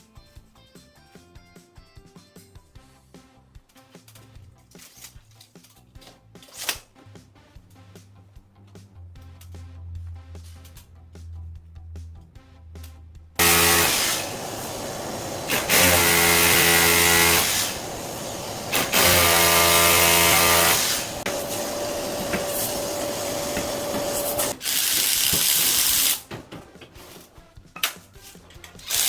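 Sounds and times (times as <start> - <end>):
electric power tool running: 13.4 - 26.2.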